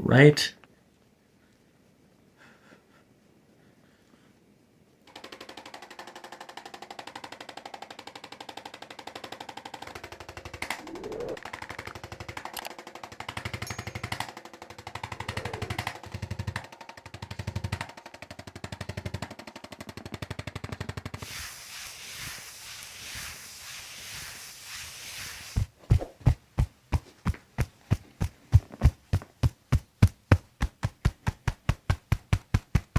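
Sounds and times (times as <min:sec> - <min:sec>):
massage gun hammering: 0:12.0 - 0:21.4, 0:22.8 - 0:32.9.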